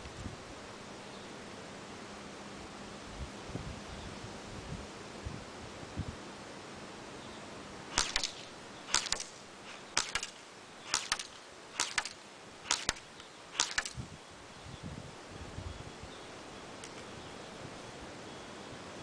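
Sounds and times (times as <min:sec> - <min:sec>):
airsoft rifle shots: 0:07.9 - 0:14.0.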